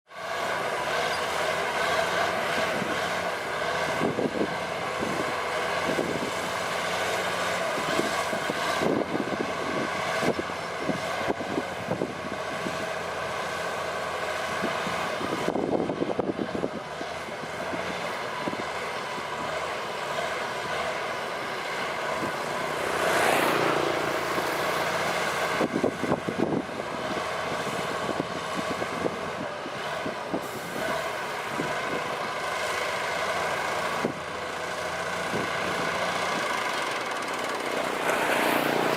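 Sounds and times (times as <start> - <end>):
heavy diesel machinery running: 0.1 - 38.9
loud rush of noise: 21.4 - 26.7, 37.1 - 38.9.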